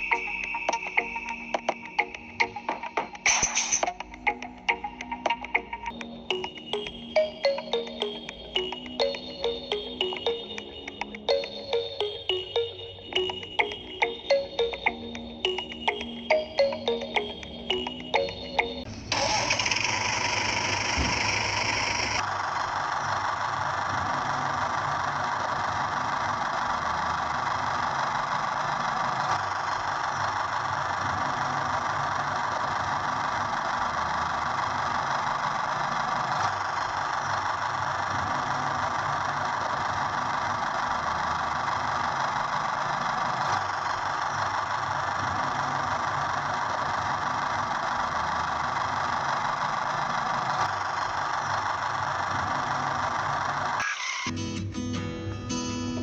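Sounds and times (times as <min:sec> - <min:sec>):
small motor whirring: 0:19.1 - 0:53.9.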